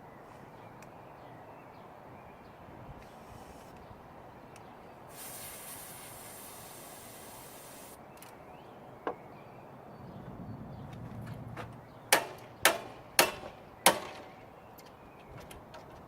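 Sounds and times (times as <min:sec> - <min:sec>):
compressed air can hissing: 0:05.1 - 0:08.0.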